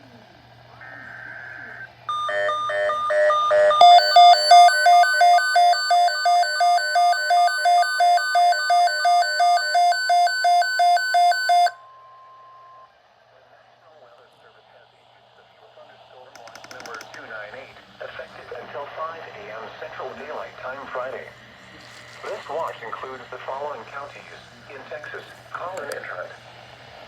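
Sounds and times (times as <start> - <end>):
faint hum: 0.0 - 27.0
faint steady tone: 0.8 - 12.9
alternating electronic beeps: 1.8 - 12.8
loud harsh repeating beep: 2.1 - 11.8.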